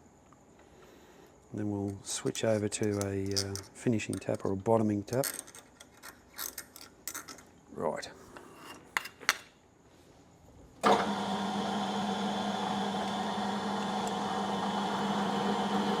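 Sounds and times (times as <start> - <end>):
metal lathe running: 10.8 - 16.0.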